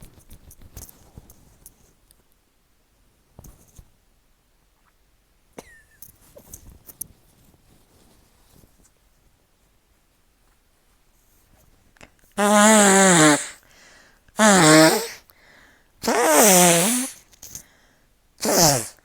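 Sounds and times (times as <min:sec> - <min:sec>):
person blowing nose: 0:12.4 - 0:13.6, 0:14.4 - 0:15.3, 0:16.0 - 0:17.6, 0:18.4 - 0:19.0.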